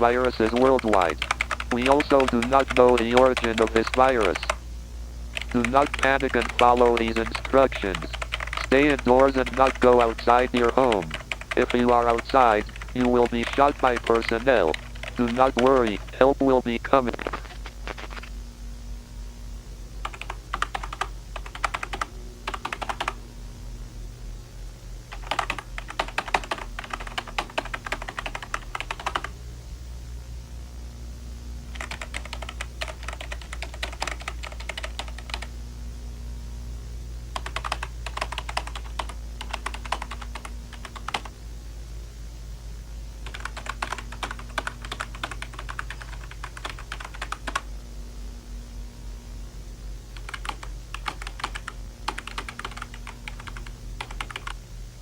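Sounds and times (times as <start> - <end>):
keyboard typing: 0.0 - 4.6, 5.4 - 18.3, 20.0 - 23.2, 25.1 - 29.3, 31.7 - 35.5, 37.4 - 41.3, 43.2 - 47.6, 50.2 - 54.6
steady low hum: 0.0 - 55.0.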